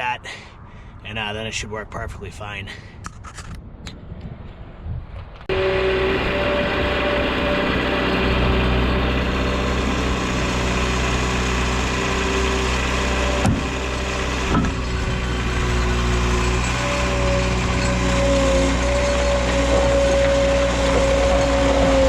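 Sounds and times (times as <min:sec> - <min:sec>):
engine running: 0:05.4 - 0:22.0
clunks: 0:13.1 - 0:22.0.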